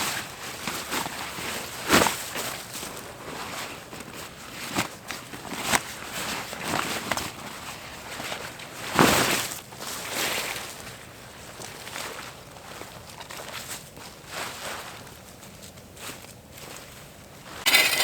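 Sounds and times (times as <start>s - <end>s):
rustling in leaf litter: 0.1s - 16.2s.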